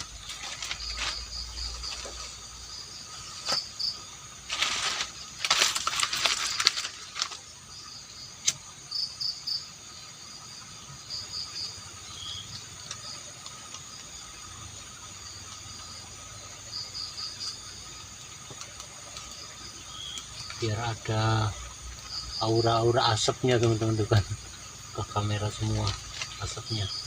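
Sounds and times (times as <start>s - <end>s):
rustling and crackling: 0.0s - 7.6s, 17.3s - 27.0s
insects chirping: 0.0s - 27.0s
sharp click: 8.4s - 8.6s.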